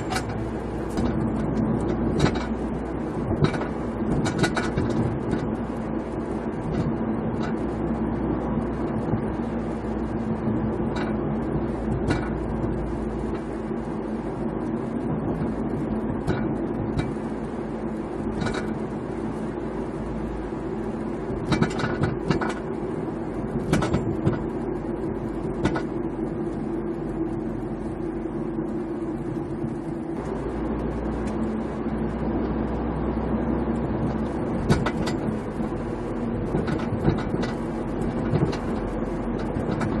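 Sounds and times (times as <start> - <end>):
car engine and road drone: 0.0 - 40.0
rattling knocks: 11.9 - 12.8, 21.4 - 22.7, 23.6 - 24.5, 25.6 - 26.0, 34.6 - 35.4, 36.5 - 40.0.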